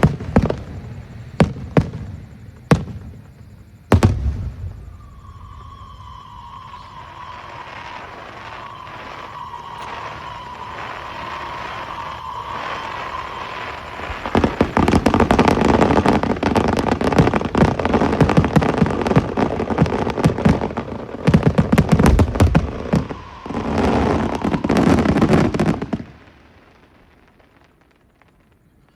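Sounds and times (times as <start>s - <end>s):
fireworks bangs and crackling: 0.0s - 28.9s.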